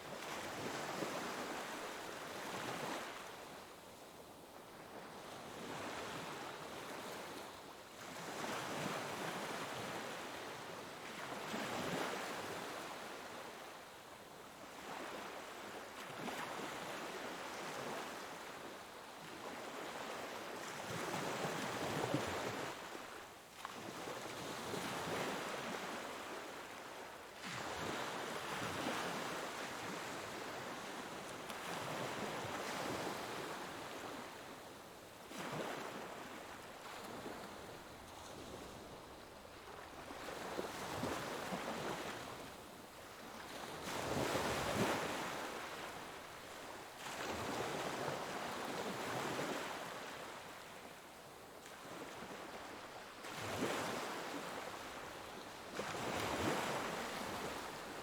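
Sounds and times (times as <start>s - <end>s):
ocean waves breaking on shore: 35.3s - 50.4s, 51.7s - 58.0s.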